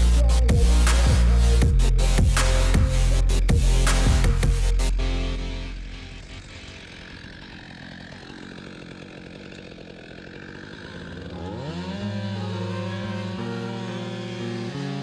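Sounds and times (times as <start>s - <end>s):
music with rising slide: 0.0s - 7.2s
two-stroke chainsaw running: 5.8s - 15.0s.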